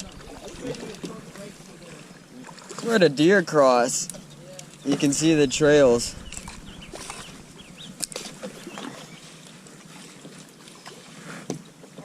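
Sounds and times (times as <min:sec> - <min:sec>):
small birds chirping: 0:04.0 - 0:09.4.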